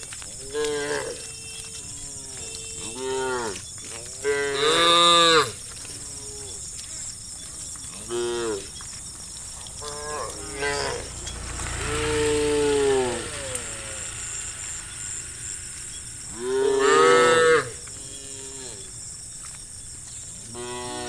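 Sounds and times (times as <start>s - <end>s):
cows mooing: 8.0s - 8.9s, 9.6s - 18.9s.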